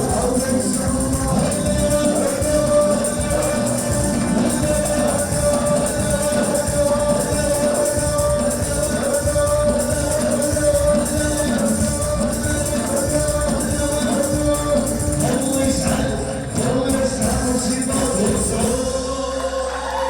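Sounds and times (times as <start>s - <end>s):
sustained melody line: 0.0s - 16.6s
tambourine jingles: 0.0s - 19.5s
hand percussion: 0.0s - 20.0s
voices singing: 0.0s - 20.0s.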